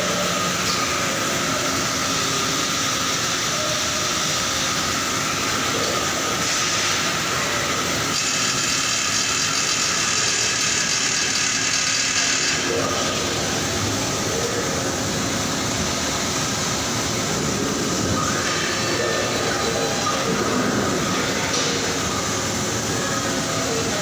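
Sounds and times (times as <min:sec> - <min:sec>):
factory machinery din: 0:00.0 - 0:24.0
machinery hum: 0:00.0 - 0:24.0.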